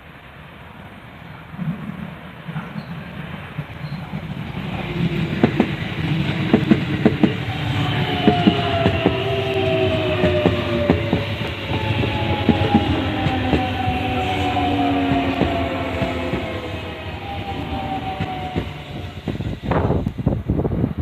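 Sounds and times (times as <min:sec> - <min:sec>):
wheels clacking over rail joints: 0:01.6 - 0:19.8
train motor whine: 0:03.8 - 0:20.3.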